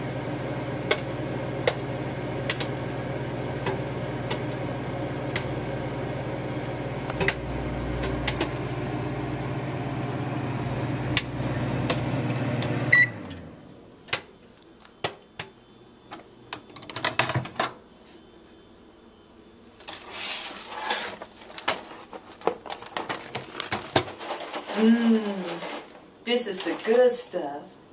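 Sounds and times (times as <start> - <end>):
popcorn popping: 0.0 - 9.8, 10.5 - 13.3, 14.0 - 15.6, 21.4 - 26.0
microwave beep: 0.0 - 13.6
microwave oven humming: 0.0 - 14.2.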